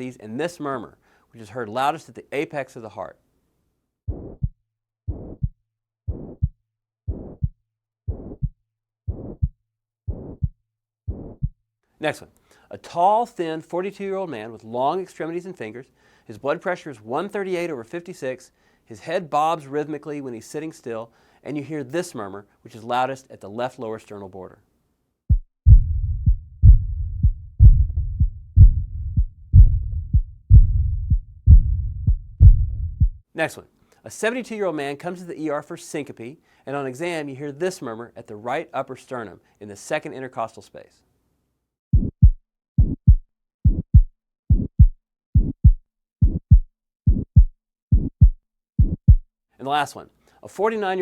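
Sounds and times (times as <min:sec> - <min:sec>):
heartbeat with murmur: 0:04.1 - 0:11.6, 0:25.3 - 0:33.2, 0:42.0 - 0:49.2.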